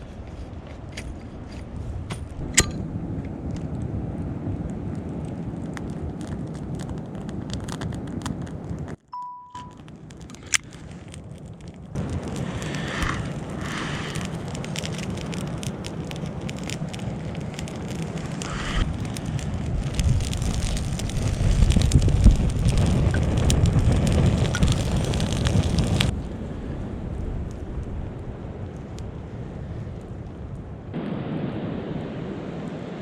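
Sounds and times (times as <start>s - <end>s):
fire crackling and hissing: 0.0s - 9.0s, 9.6s - 33.0s.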